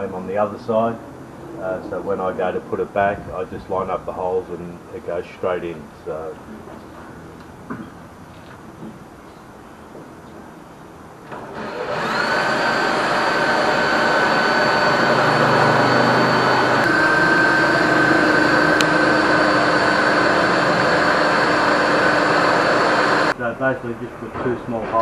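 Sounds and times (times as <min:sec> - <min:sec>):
high-speed motor whine: 0:11.2 - 0:23.4.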